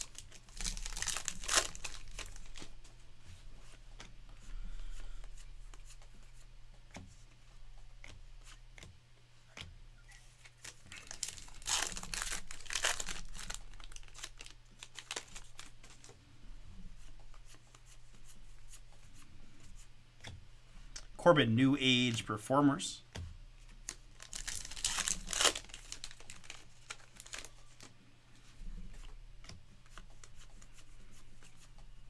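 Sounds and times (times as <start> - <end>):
wrapper paper crinkling and tearing: 0.0 - 2.7, 10.4 - 16.1, 23.9 - 27.9.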